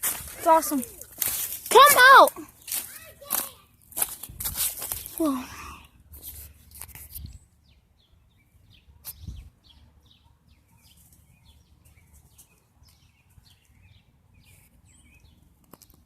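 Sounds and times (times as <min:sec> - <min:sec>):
bird chirping: 0:07.1 - 0:16.0.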